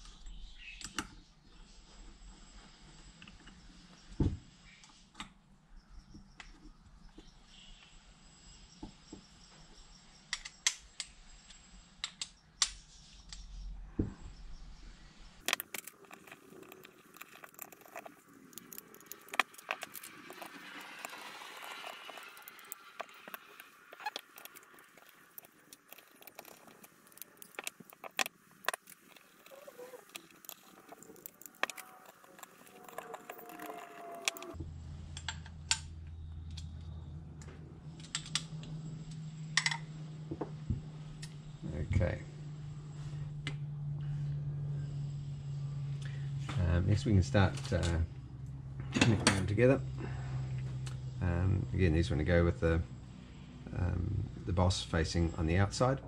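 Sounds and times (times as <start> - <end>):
metal parts and tools clinking: 15.4 - 34.6.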